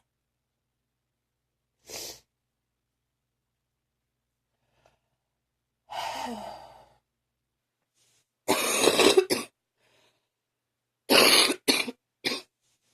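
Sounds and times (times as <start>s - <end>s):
person clearing throat: 8.5s - 9.5s
person coughing: 8.5s - 9.6s, 11.1s - 12.5s.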